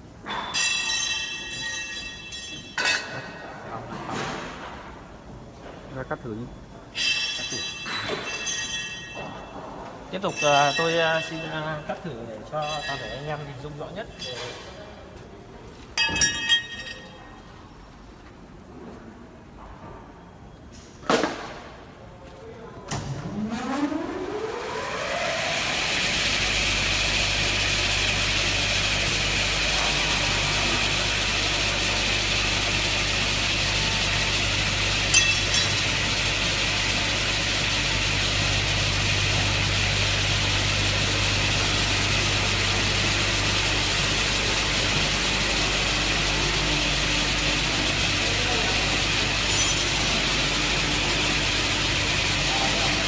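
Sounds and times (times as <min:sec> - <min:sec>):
cutting saw running: 0:23.8 - 0:53.0.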